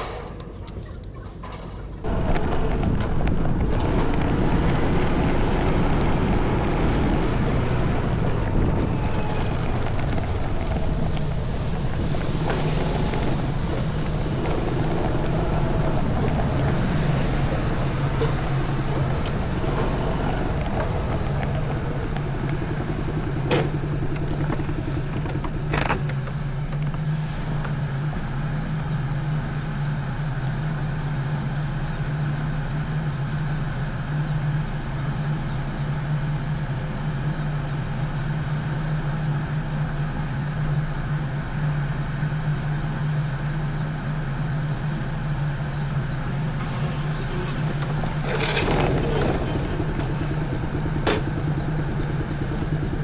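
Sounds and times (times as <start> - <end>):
motorcycle engine running: 2.0 - 28.2, 45.9 - 53.0.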